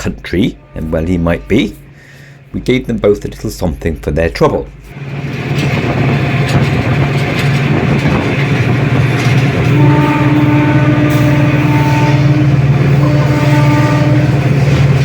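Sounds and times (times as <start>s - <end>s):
locomotive horn: 0.0s - 2.2s, 9.4s - 15.0s
locomotive engine drone: 0.0s - 15.0s.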